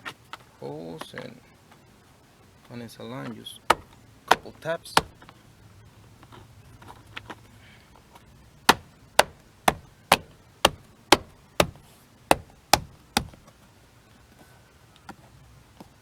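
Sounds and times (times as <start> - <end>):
sharp taps on trim panel: 3.7 - 5.3, 8.7 - 13.5.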